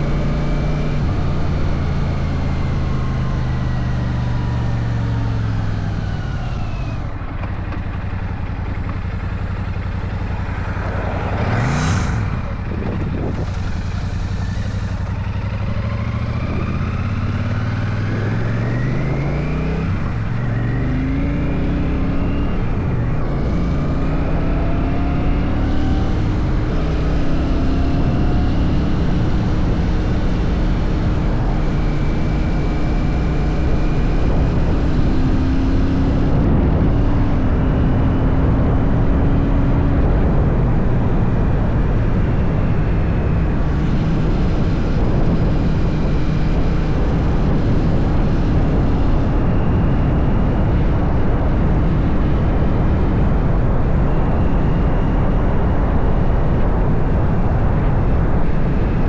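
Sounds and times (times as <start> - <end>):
motorcycle engine accelerating: 0.0 - 59.0
loud rush of noise: 6.8 - 20.6.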